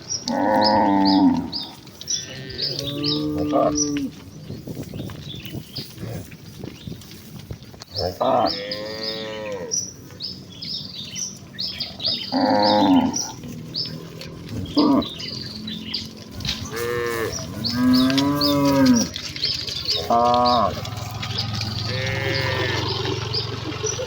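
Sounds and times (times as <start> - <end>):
birds chirping: 0.0 - 24.0
cattle mooing: 0.2 - 4.3, 7.9 - 9.8, 12.0 - 24.0.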